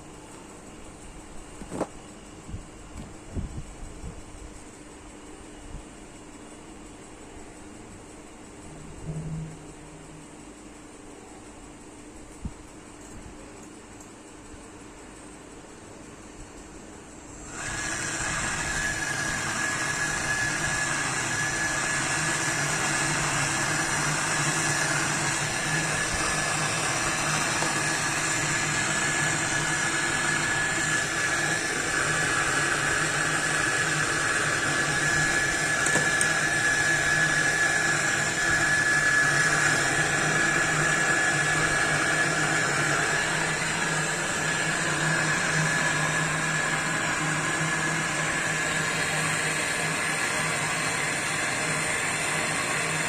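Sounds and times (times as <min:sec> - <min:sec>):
motor whining: 0:17.4 - 0:53.0.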